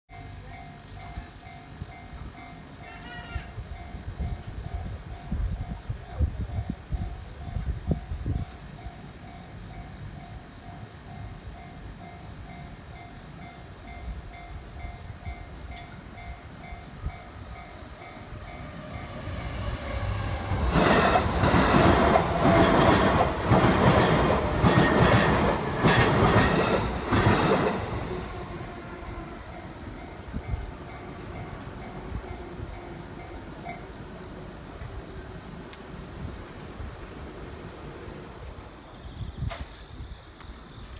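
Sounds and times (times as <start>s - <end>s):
railroad crossing bell ringing: 0.1s - 34.1s
electric train passing: 0.1s - 40.9s
wheels clacking over rail joints: 20.2s - 28.2s.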